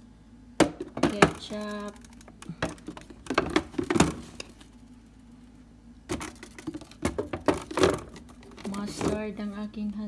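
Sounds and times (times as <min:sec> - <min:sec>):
condiment bottles knocking: 0:00.6 - 0:04.5, 0:06.1 - 0:09.2.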